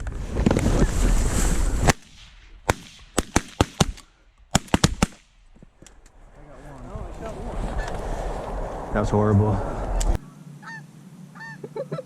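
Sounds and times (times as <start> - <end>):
shotgun shots: 1.8 - 5.4
geese honking: 7.7 - 8.1, 10.3 - 11.8.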